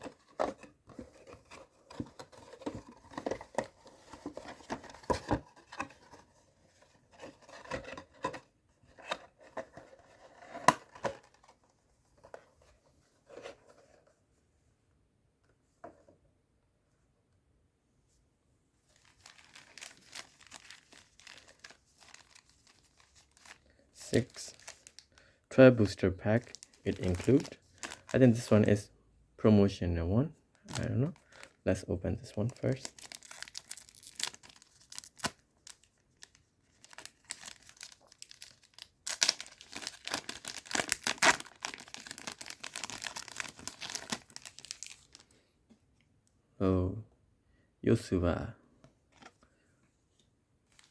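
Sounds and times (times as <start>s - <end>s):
plastic packaging crinkling and tearing: 19.0s - 25.0s, 25.8s - 28.5s, 32.2s - 45.3s.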